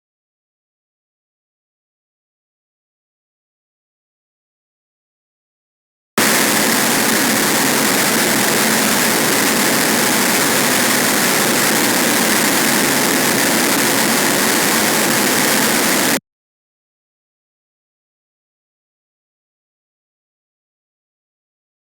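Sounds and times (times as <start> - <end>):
harsh static electronic noise: 6.2 - 16.2.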